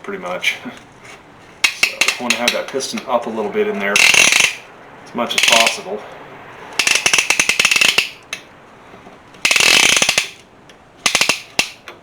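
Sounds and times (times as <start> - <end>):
ratchet clicking rapidly: 1.6 - 3.0, 3.9 - 4.7, 5.3 - 5.8, 6.7 - 8.5, 9.3 - 10.4, 11.0 - 12.0.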